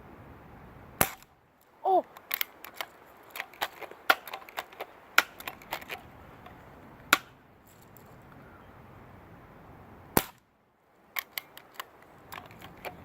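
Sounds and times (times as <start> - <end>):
bb gun cracks: 1.0 - 1.3, 2.1 - 6.0, 7.1 - 7.4, 10.2 - 10.4
bb gun clicks and snaps: 2.1 - 7.3, 11.2 - 13.0.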